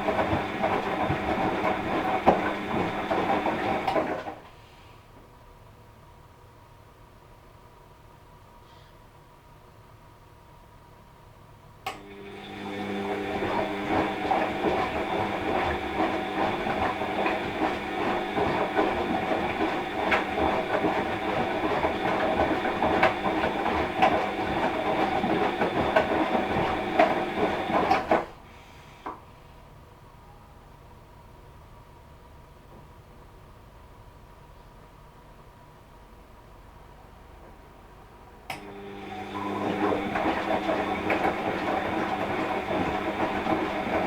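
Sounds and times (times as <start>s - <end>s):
washing machine drum tumbling: 0.0s - 4.3s, 13.0s - 28.4s, 39.1s - 44.0s.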